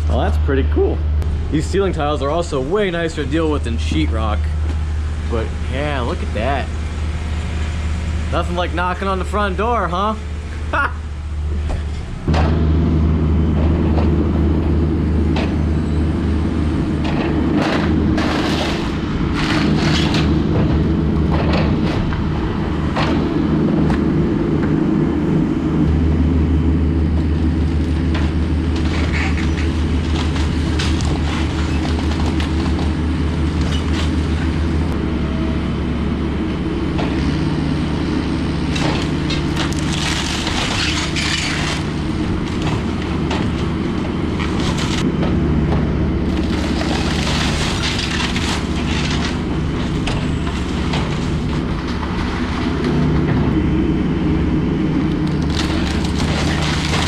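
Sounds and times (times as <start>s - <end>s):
excavator engine running: 0.0s - 57.0s
walls cracking and crashing: 17.2s - 22.2s, 28.0s - 34.6s, 38.8s - 45.1s, 46.3s - 52.7s, 55.3s - 57.0s.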